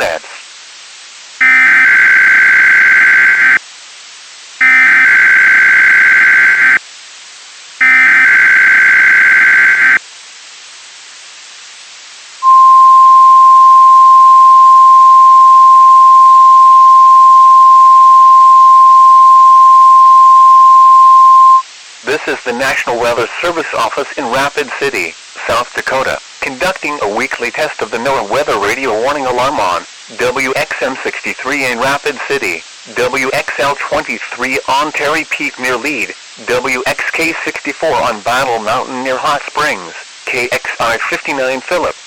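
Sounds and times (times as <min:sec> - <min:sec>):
steady single-pitch alarm tone: 0:01.4 - 0:03.6, 0:04.6 - 0:06.8, 0:07.8 - 0:10.0, 0:12.4 - 0:21.6.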